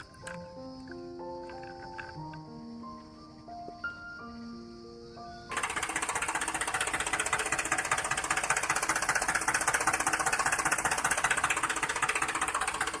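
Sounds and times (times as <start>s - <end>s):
small motor running with knocking: 5.5s - 13.0s.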